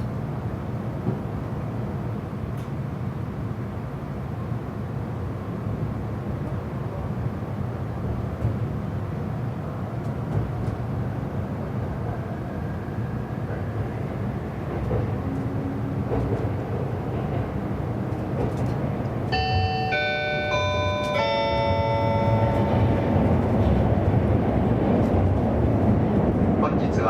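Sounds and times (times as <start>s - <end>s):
train interior rumble: 0.0s - 27.0s
announcement chime melody: 19.4s - 23.0s.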